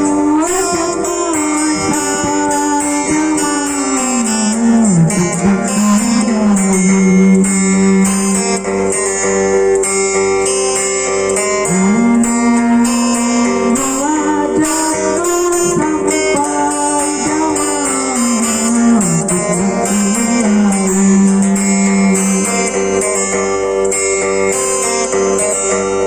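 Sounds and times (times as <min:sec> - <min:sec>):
acoustic guitar with sliding notes: 0:00.0 - 0:26.0.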